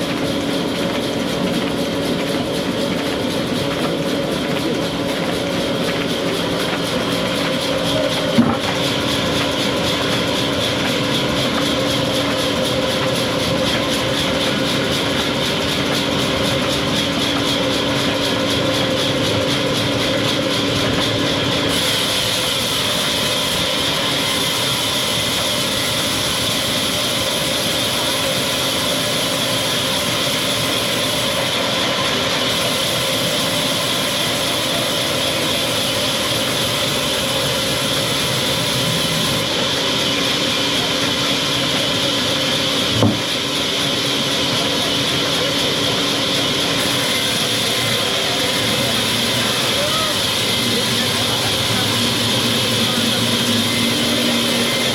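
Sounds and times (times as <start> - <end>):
sawmill machinery whine: 0.0 - 54.9
brief knock: 43.0 - 43.2.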